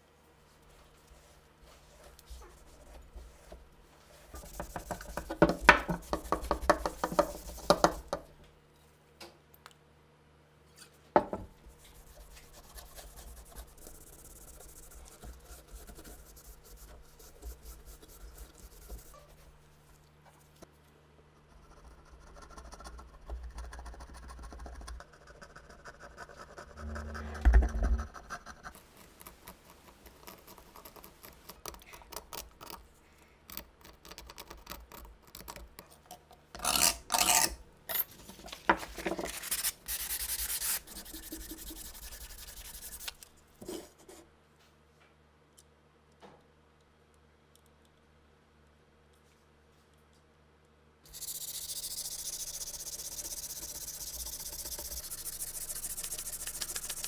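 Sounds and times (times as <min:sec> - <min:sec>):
scraping and rubbing on metal: 0:01.2 - 0:08.2, 0:25.2 - 0:31.5, 0:36.6 - 0:44.2.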